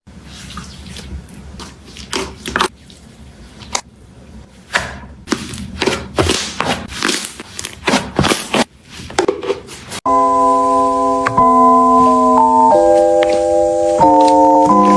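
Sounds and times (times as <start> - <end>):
hands squishing slime: 0.2 - 3.9, 4.7 - 9.1.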